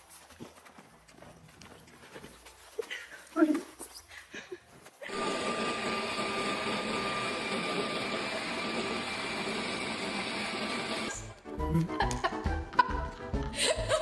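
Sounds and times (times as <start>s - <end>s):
small motor whirring: 5.0s - 11.3s.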